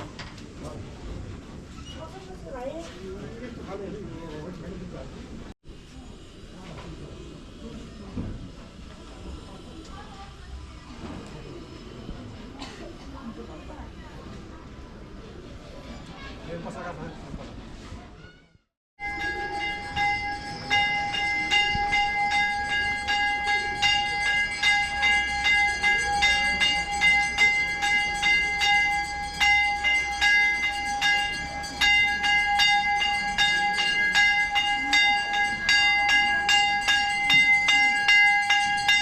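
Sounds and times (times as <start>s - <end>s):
metal bells ringing: 19.0s - 39.0s.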